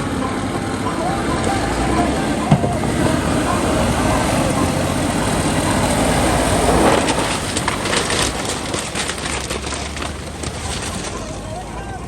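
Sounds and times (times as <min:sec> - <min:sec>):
off-road vehicle engine running: 0:00.0 - 0:12.0
clicks and rattles: 0:06.8 - 0:11.4.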